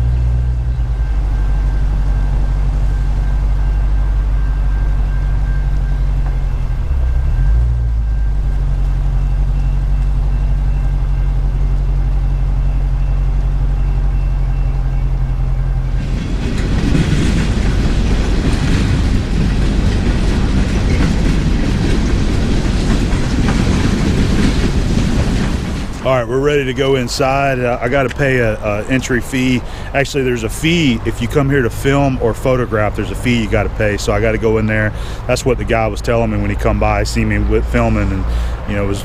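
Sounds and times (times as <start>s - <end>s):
train engine drone: 0.0s - 39.0s
train wheels clattering on rails: 13.8s - 39.0s.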